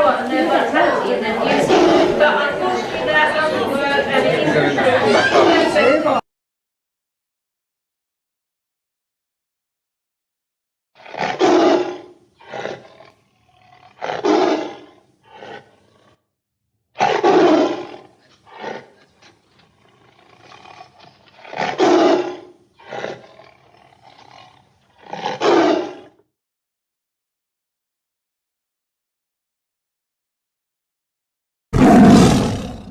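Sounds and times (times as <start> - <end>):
animal grunts: 1.4 - 2.9, 11.0 - 16.2, 17.0 - 26.2, 31.8 - 32.9
large animal roaring: 11.0 - 16.2, 17.0 - 26.2, 31.8 - 32.9.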